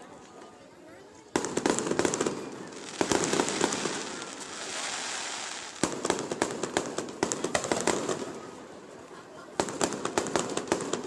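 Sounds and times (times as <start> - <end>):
firework bangs: 1.4 - 8.6, 9.5 - 11.0.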